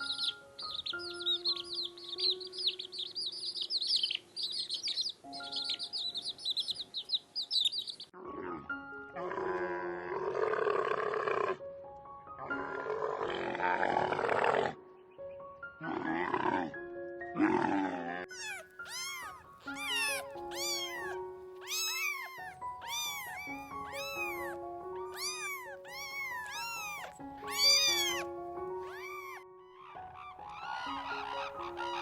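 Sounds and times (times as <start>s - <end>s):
background music: 0.0s - 32.0s
rough animal calls: 17.4s - 32.0s.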